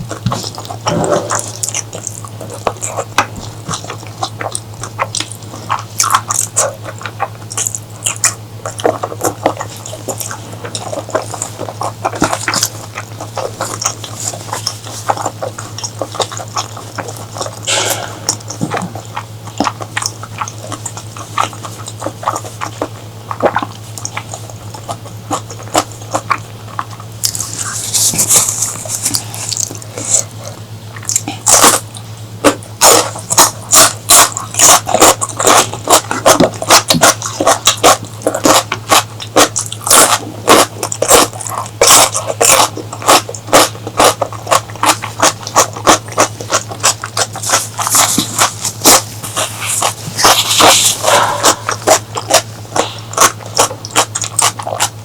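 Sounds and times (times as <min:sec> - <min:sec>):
steady low hum: 0:00.0 - 0:55.0
wet chewing and lip-smacking: 0:00.0 - 0:55.0
loud crunching bites: 0:23.6 - 0:55.0.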